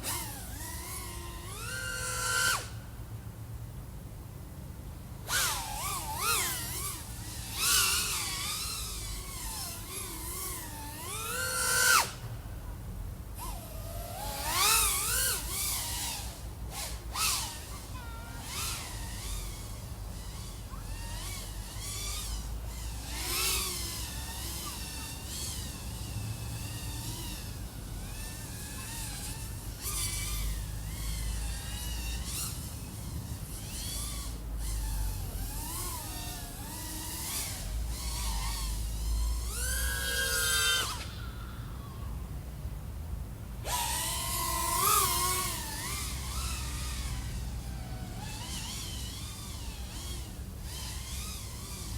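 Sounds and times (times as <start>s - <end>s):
drone motors whining: 0.0s - 2.9s, 5.2s - 42.7s, 43.6s - 51.9s.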